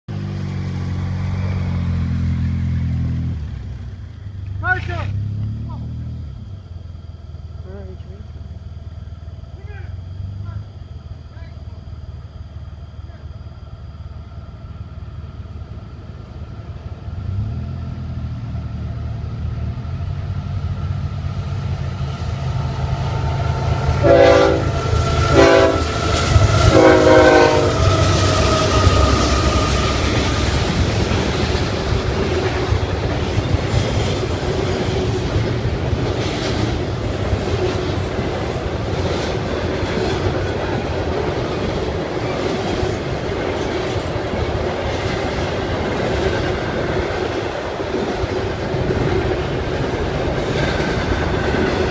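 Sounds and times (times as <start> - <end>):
locomotive engine rumble: 0.1 - 51.9
locomotive air horn blasts: 23.5 - 30.3
train wheels clattering: 23.7 - 51.9.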